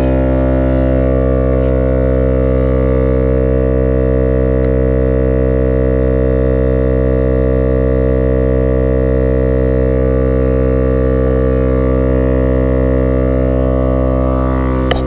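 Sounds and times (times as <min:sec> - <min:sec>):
air compressor running: 0:00.0 - 0:15.0.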